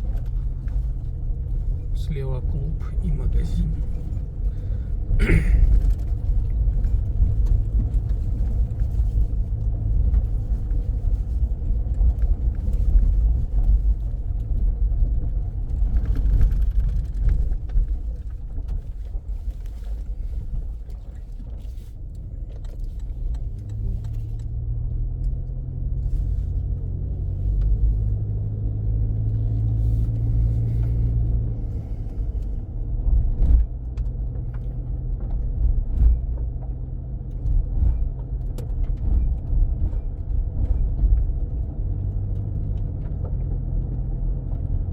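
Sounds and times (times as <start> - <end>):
car engine and road rumble: 0.0 - 44.9.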